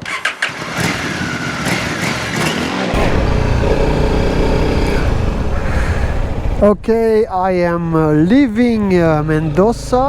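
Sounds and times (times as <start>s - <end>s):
motorcycle engine running: 3.0s - 6.7s.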